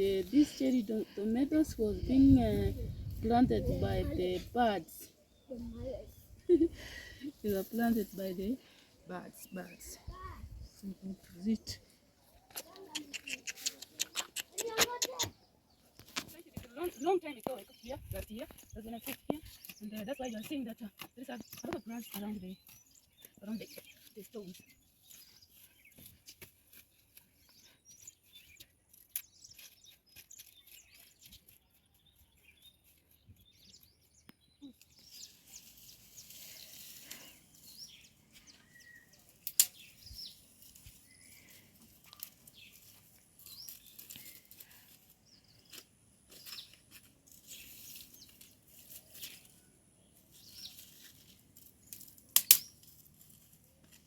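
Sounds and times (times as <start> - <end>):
leaves rustling and crackling: 34.7 - 54.0
sharp stem snaps: 39.4 - 39.9, 51.9 - 52.9.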